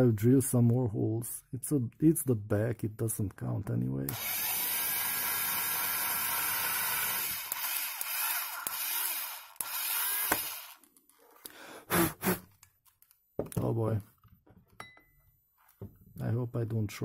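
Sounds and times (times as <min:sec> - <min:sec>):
electric drill boring metal: 0:04.1 - 0:10.8.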